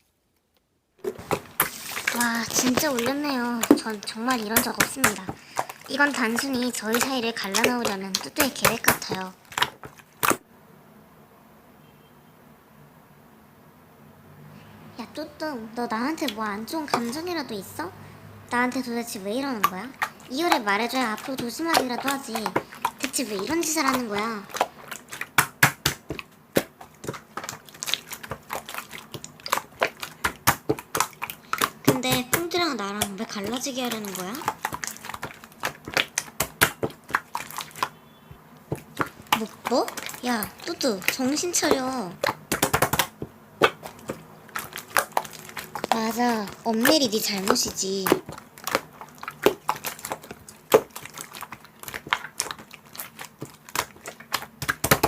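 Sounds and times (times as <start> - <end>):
slime clicking and popping: 1.2 - 10.4, 18.6 - 55.0.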